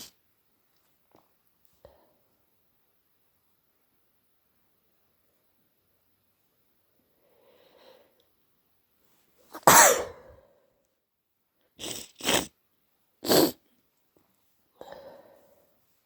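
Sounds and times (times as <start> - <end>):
person sneezing: 9.6 - 10.4, 13.2 - 13.6.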